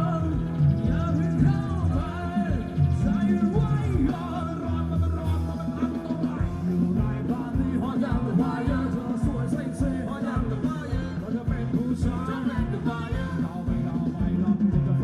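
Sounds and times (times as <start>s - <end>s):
driving drum beat: 0.0s - 15.0s
electric instruments: 0.0s - 15.0s
person singing: 0.0s - 15.0s.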